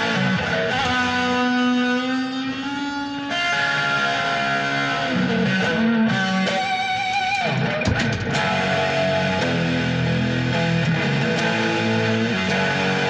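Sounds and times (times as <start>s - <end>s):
electric guitar playing: 0.0s - 13.0s
scratchy guitar noise: 0.0s - 13.0s.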